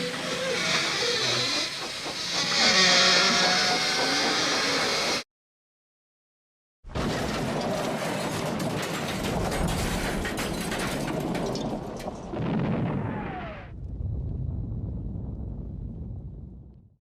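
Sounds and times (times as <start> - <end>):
loud crackling rumble: 7.0 - 17.0.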